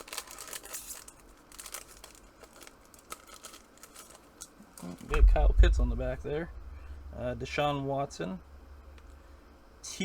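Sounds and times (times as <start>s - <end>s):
foil wrapper crinkling and tearing: 0.0s - 5.1s.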